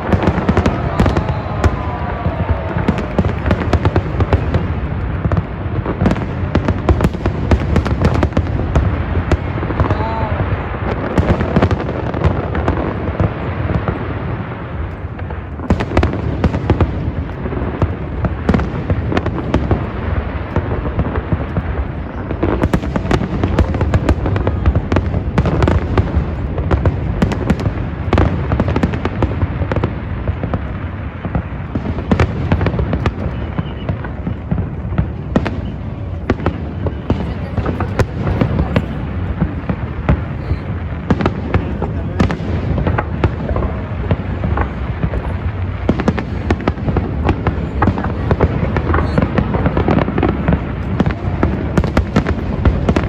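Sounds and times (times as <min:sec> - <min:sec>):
fireworks bangs and crackles: 0:00.0 - 0:53.0.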